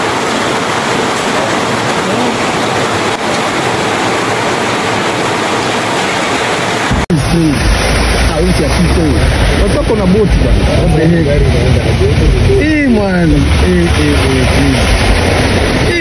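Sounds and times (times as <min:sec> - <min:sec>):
water rushing: 0:00.0 - 0:16.0
low rumble: 0:06.8 - 0:16.0.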